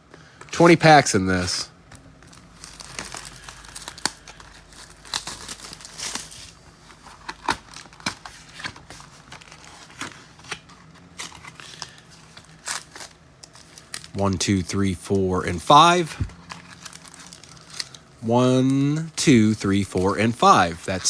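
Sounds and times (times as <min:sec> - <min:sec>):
plastic wrap and cardboard crinkling: 0:02.2 - 0:14.1, 0:16.0 - 0:18.1.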